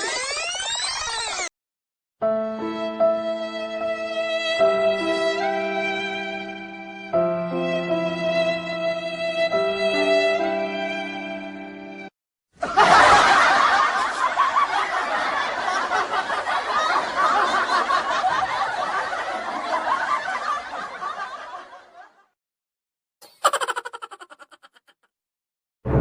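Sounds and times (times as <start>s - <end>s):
crowd laughing: 12.6s - 22.3s, 23.2s - 25.1s.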